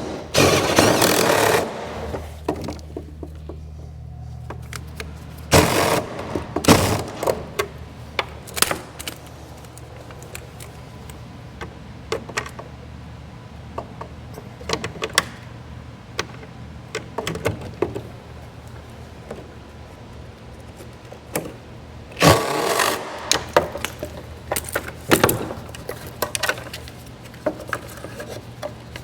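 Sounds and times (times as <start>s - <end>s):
short scraping bursts: 0.0s - 2.4s
steady low hum: 0.0s - 14.4s.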